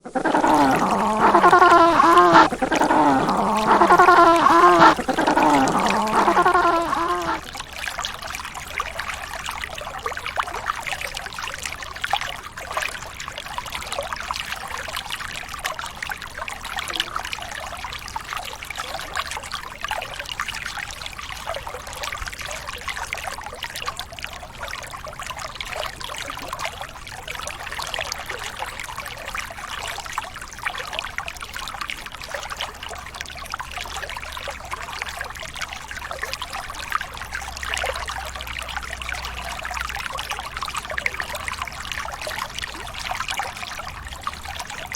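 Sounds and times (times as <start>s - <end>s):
penguin calling: 0.0s - 7.4s
water trickling and splashing: 0.0s - 44.9s.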